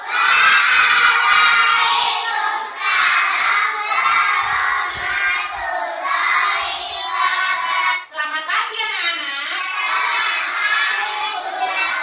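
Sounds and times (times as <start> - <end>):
children chanting in unison: 0.0 - 8.1, 9.6 - 12.0.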